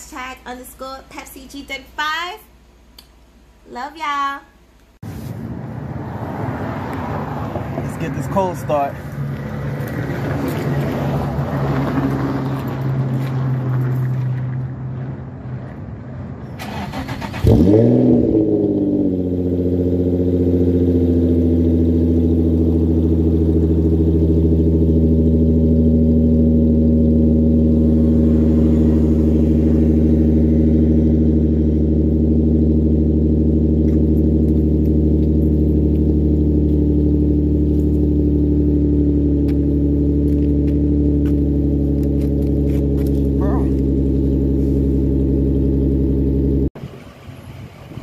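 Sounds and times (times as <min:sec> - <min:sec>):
car engine revving and idling: 0:05.2 - 0:48.0
car engine cranking: 0:16.5 - 0:21.8, 0:39.0 - 0:46.7.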